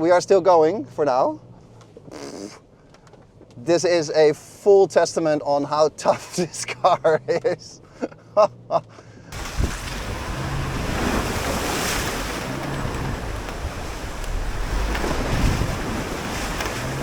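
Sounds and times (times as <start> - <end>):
low engine hum: 0.0 - 4.1, 4.7 - 17.0
tyre and wind noise: 9.3 - 17.0.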